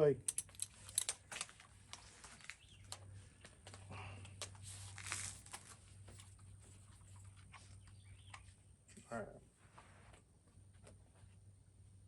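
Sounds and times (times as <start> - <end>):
clicks and rustling of gear: 0.2 - 6.3.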